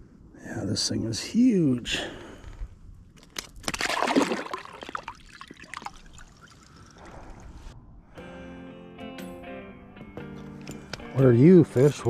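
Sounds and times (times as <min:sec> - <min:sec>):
water splashing and trickling: 0:03.2 - 0:07.8
music: 0:08.1 - 0:12.0.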